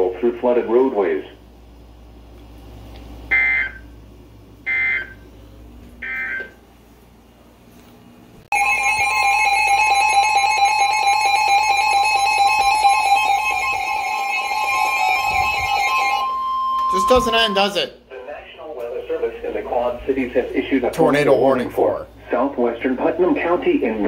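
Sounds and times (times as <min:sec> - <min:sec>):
harsh two-tone alert signal: 0:08.5 - 0:18.0
raspy data tone beeps: 0:10.1 - 0:17.8.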